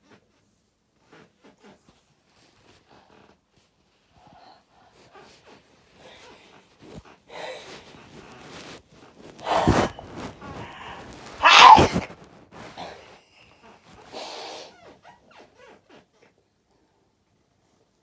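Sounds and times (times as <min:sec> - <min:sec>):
snuffling breaths: 0:04.2 - 0:13.3
loud sneezes: 0:09.4 - 0:13.0.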